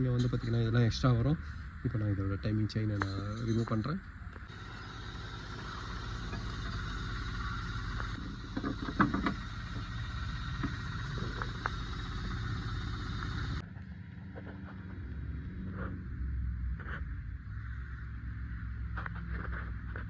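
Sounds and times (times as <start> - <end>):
low workshop hum: 0.0 - 20.0.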